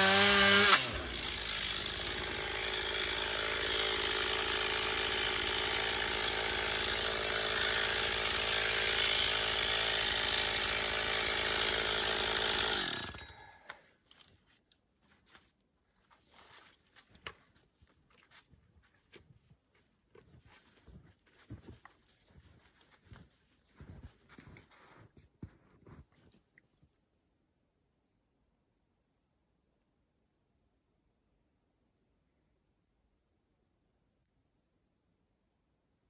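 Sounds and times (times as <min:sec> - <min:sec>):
chainsaw engine running: 0:00.0 - 0:13.8.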